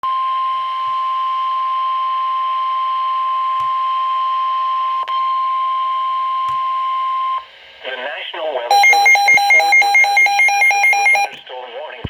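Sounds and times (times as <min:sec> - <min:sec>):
loud steady warning beep: 0:08.7 - 0:11.4.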